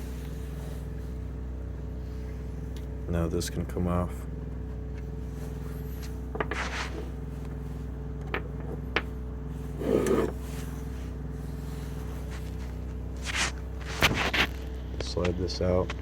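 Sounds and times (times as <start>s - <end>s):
steady low hum: 0.0s - 16.0s
metal scraping rub: 9.6s - 11.0s.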